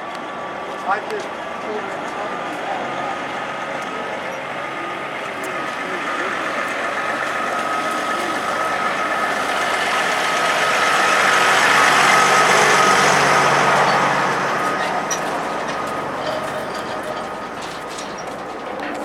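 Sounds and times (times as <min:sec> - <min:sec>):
vehicle engine running: 0:00.0 - 0:19.0.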